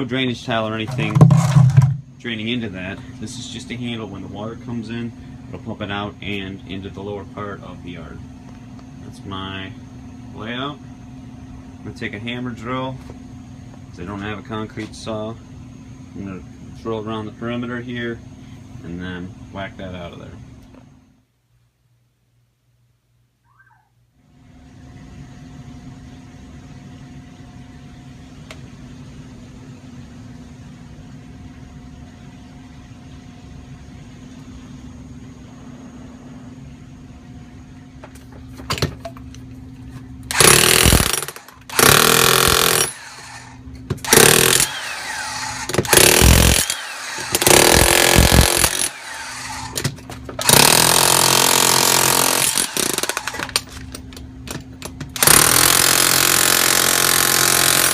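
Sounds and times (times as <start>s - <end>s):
low steady hum: 0.0s - 55.3s
hammer drill boring into concrete: 40.3s - 49.8s, 50.4s - 53.6s, 55.2s - 57.9s.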